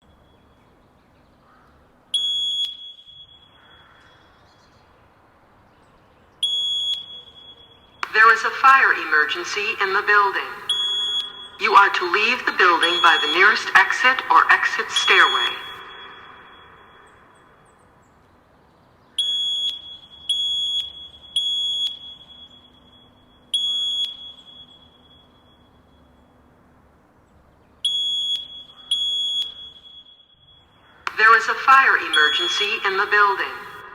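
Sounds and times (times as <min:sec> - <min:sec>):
fire alarm beep: 0:02.1 - 0:04.1, 0:06.4 - 0:17.7, 0:19.2 - 0:26.6, 0:27.8 - 0:33.9.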